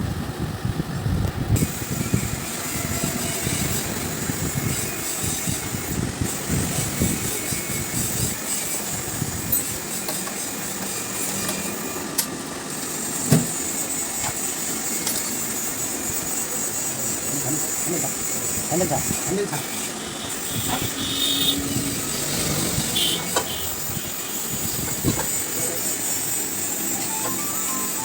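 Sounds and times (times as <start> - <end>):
motor traffic running: 18.4 - 28.0.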